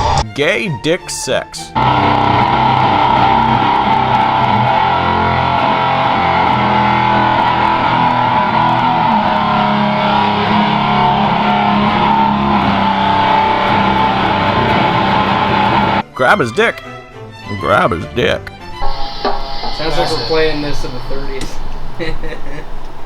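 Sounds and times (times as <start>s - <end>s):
bass guitar: 1.7s - 16.0s
distorted electric guitar chords: 1.8s - 16.0s, 18.8s - 22.6s.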